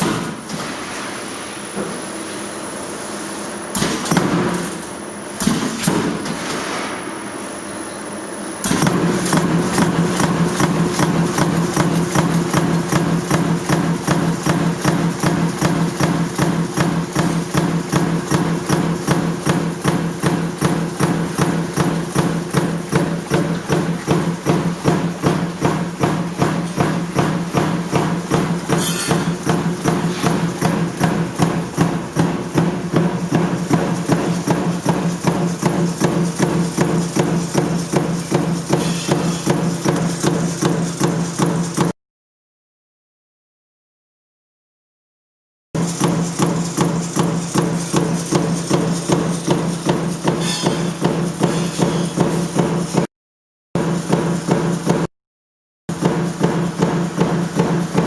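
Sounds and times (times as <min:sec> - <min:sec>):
metal stamping press strokes: 0:08.6 - 0:41.9, 0:45.8 - 0:53.1, 0:55.9 - 0:58.0.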